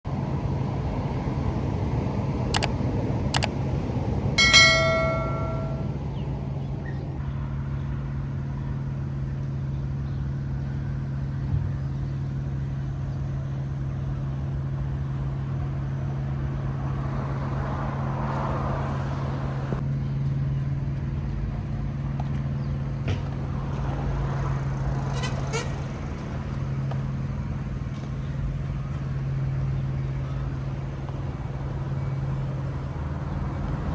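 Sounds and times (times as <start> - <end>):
distant road traffic hum: 0.1 - 33.9
short ringing tone: 4.4 - 6.0.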